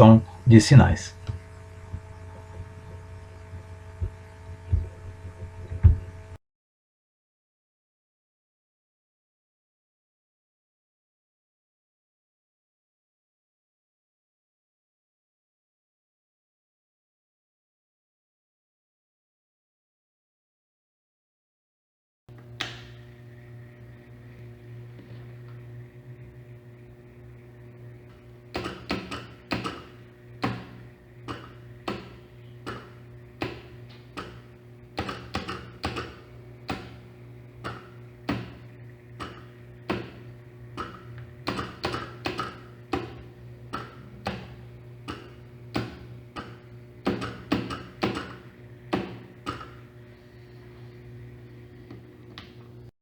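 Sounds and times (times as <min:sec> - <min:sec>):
steady low hum: 0:00.0 - 0:06.4, 0:22.3 - 0:52.9.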